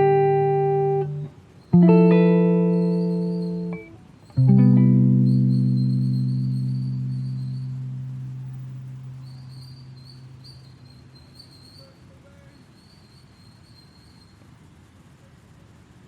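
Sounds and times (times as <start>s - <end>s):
acoustic guitar notes: 0.0s - 10.7s
high chirping: 0.0s - 11.9s
faint outdoor ambience: 0.0s - 16.0s.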